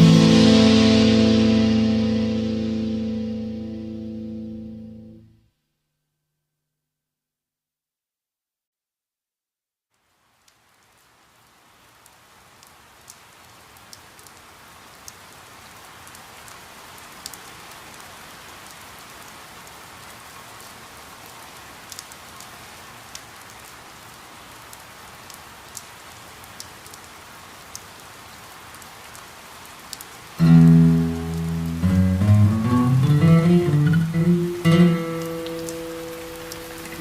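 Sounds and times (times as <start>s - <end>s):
rain falling steadily: 0.0s - 5.2s, 9.9s - 37.0s
sharp drips and taps: 33.0s - 37.0s.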